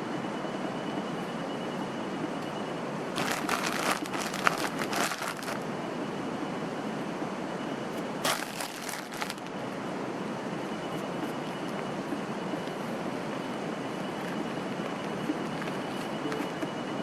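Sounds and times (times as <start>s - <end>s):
crinkling handling noise: 3.2s - 5.6s, 8.2s - 9.5s.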